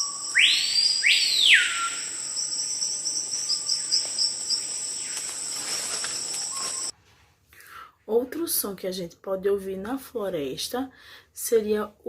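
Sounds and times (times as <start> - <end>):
loud sweeping calls: 0.0 - 2.4
birds whistling: 0.0 - 4.0, 6.2 - 6.9
shrill insect chorus: 0.0 - 6.9.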